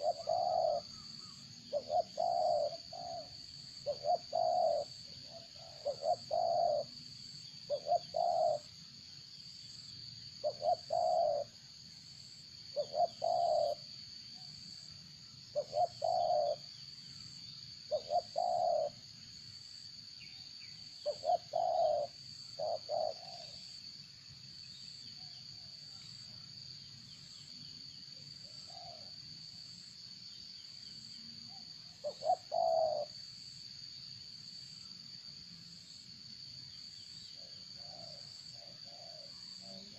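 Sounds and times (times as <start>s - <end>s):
bird's low-pitched call: 0.0s - 6.9s, 7.7s - 8.7s, 12.8s - 13.8s, 15.6s - 16.7s, 17.9s - 19.0s, 21.0s - 23.6s, 31.5s - 33.2s.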